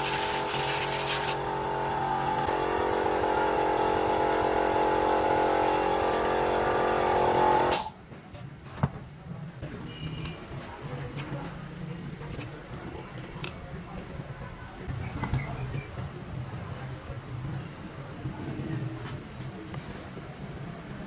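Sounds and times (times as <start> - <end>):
rough hissing noise: 0.0 - 1.4
power tool motor running: 0.0 - 7.9.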